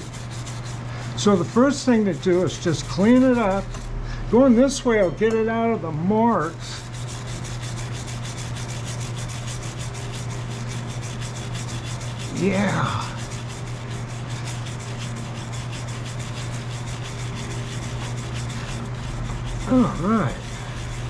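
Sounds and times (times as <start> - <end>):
brush scrubbing metal dial: 0.0 - 3.9, 6.3 - 21.0
low hum: 2.4 - 7.1.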